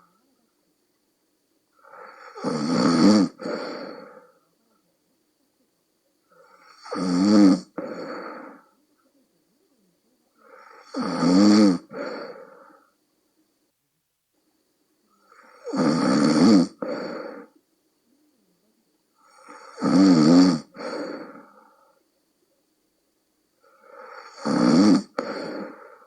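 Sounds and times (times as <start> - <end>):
person snoring heavily: 1.8 - 4.2, 6.4 - 8.6, 10.4 - 12.7, 15.3 - 17.5, 19.2 - 21.6, 23.7 - 26.0.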